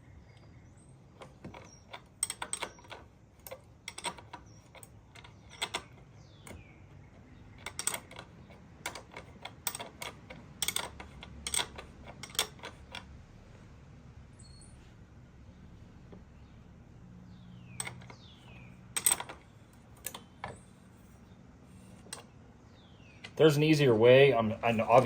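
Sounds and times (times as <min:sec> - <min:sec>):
socket ratchet clicking: 0:07.6 - 0:13.1.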